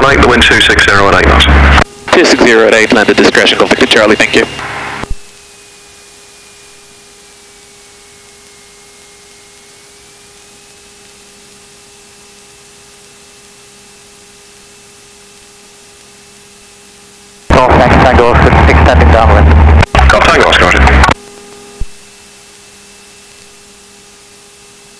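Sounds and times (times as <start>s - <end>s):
intercom audio hiss: 0.0s - 4.6s, 17.5s - 22.2s
thin high whine: 0.0s - 24.9s.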